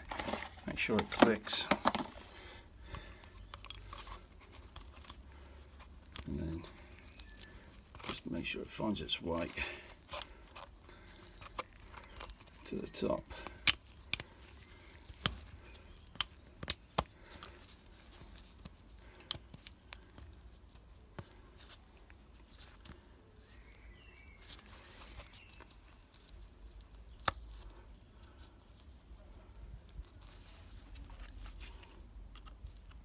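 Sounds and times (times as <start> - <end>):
plastic parts clicking together: 0.1 - 2.3, 3.0 - 5.2, 13.5 - 17.6, 18.4 - 20.3.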